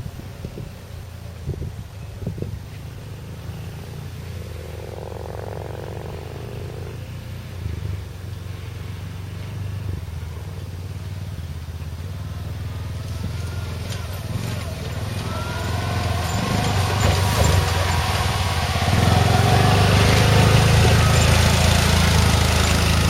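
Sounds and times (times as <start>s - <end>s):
engine rumbling at low revs: 0.0s - 23.0s
high whine: 13.0s - 23.0s.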